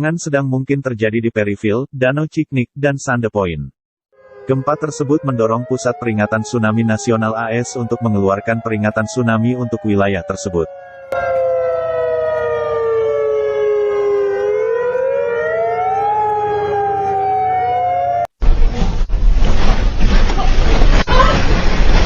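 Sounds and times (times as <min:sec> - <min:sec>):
warning sirens wailing: 0:04.1 - 0:18.3
loud rough rumbling noise: 0:18.4 - 0:22.0.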